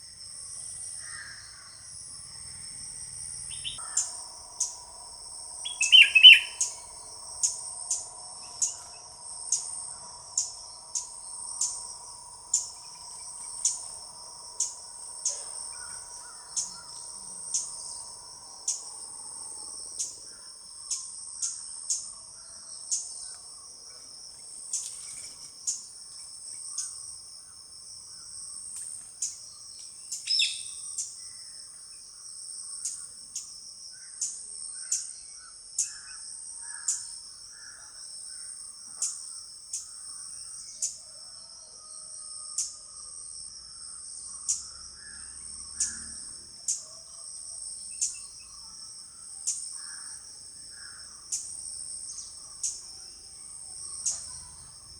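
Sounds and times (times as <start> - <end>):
insect chorus drone: 0.0 - 54.9
bird chirps: 3.4 - 4.9, 5.6 - 11.8, 30.0 - 31.2.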